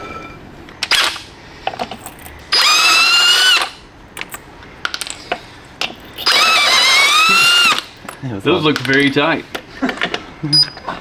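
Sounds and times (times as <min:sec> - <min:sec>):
impact wrench whining: 0:00.8 - 0:03.9, 0:06.1 - 0:08.1.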